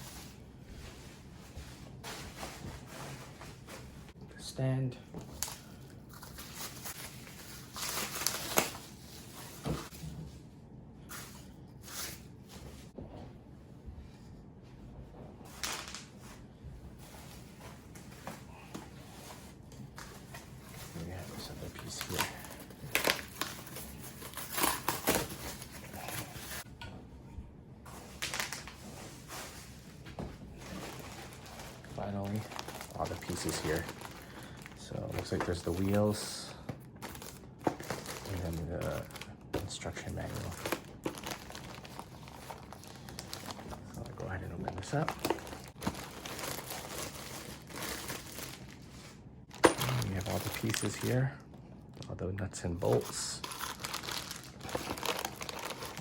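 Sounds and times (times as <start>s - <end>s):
plastic packaging crinkling: 5.3s - 9.6s, 20.2s - 26.6s, 28.0s - 29.7s, 30.6s - 51.3s, 52.9s - 56.0s.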